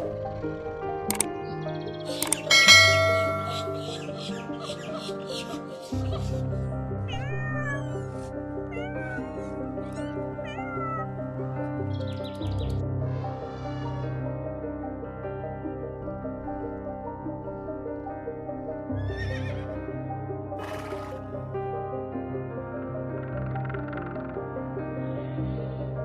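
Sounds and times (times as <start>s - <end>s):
background music: 0.0s - 26.0s
cat meowing: 7.1s - 11.2s.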